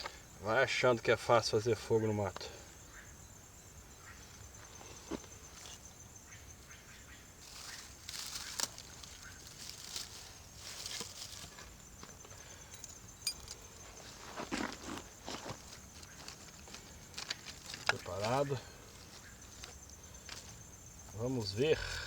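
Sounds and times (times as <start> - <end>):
pulsed insect trill: 0.0 - 22.0
gear rustling and clicking: 8.4 - 20.4.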